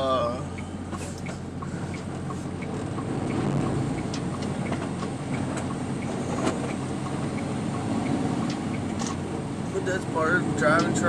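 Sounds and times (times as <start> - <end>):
diesel engine running low: 0.0 - 11.0
road noise: 0.0 - 11.0
faint regular ticking: 0.4 - 9.3.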